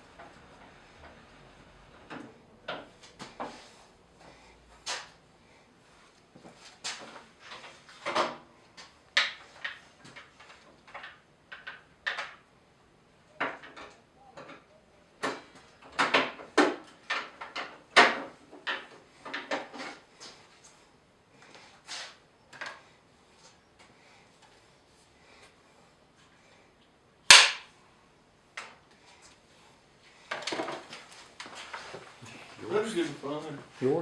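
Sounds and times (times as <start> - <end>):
objects knocking and rattling: 6.4 - 12.5, 13.3 - 20.4, 30.3 - 32.2.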